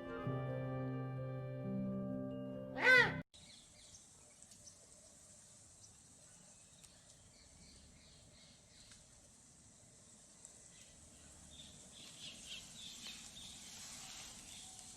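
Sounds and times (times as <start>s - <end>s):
small birds chirping softly: 3.4s - 14.9s.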